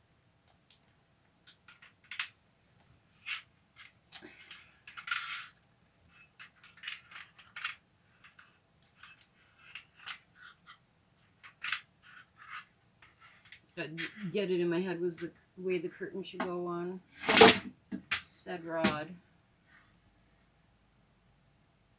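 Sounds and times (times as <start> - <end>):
curtain rod clicking: 17.2 - 19.0.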